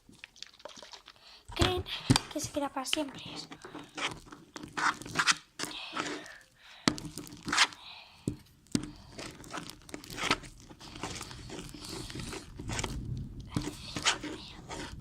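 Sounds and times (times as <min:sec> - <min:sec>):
slime snapping and crackling: 0:08.6 - 0:15.0.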